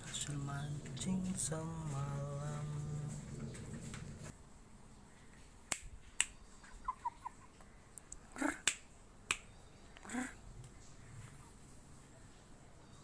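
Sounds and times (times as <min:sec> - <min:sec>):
sharp clicks: 0:05.7 - 0:06.4.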